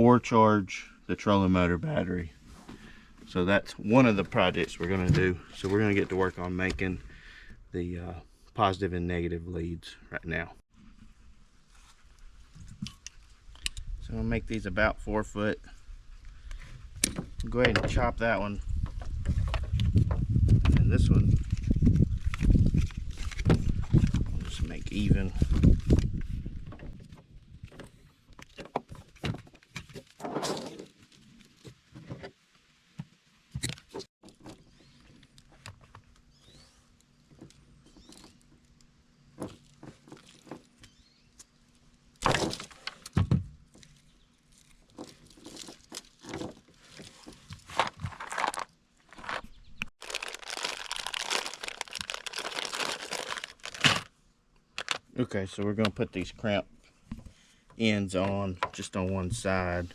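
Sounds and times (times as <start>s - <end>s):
dense rustling crinkling: 1.8s - 7.0s, 17.5s - 32.7s, 43.6s - 54.1s.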